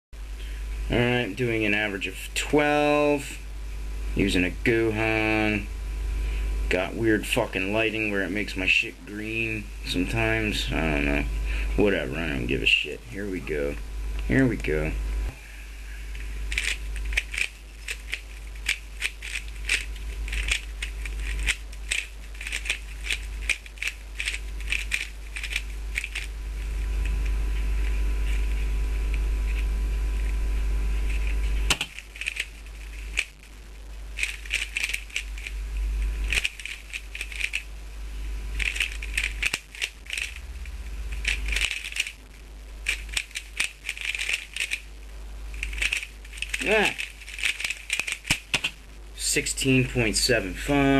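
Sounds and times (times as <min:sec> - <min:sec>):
steady low hum: 0:00.2 - 0:50.9
plastic puzzle cube clicking: 0:16.5 - 0:26.3, 0:31.2 - 0:33.3, 0:34.2 - 0:35.5, 0:36.3 - 0:37.7, 0:38.6 - 0:40.4, 0:41.2 - 0:42.2, 0:42.8 - 0:44.9, 0:45.6 - 0:48.8.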